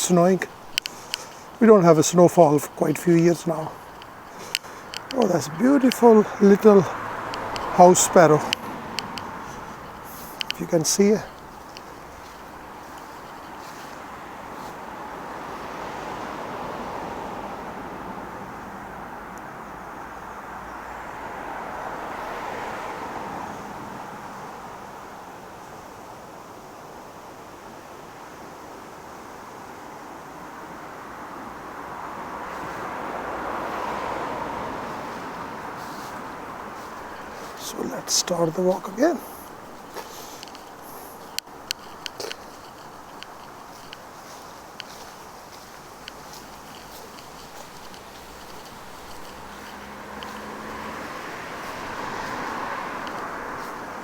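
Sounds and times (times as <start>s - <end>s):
car approaching: 0.0s - 24.9s, 30.9s - 54.0s
vehicle tyre and road noise: 0.0s - 54.0s.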